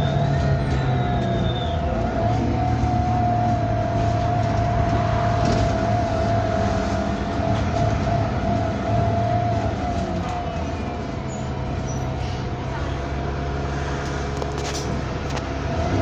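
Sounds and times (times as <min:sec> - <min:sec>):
bus engine drone: 0:00.0 - 0:16.0.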